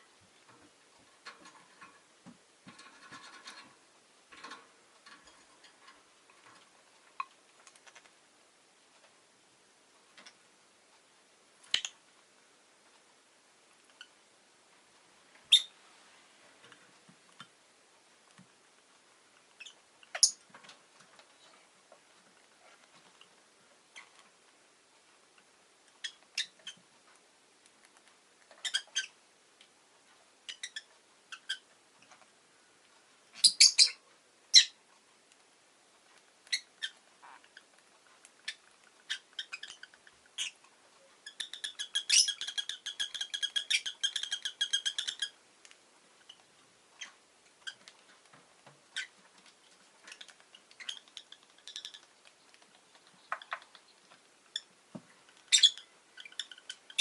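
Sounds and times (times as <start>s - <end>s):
lovebird chirping: 11.6s - 12.0s, 15.5s - 15.8s, 19.6s - 20.4s, 26.0s - 26.8s, 28.6s - 29.2s, 30.5s - 31.7s, 33.3s - 34.8s, 38.4s - 40.6s, 41.2s - 45.4s, 50.1s - 54.7s, 55.4s - 57.0s.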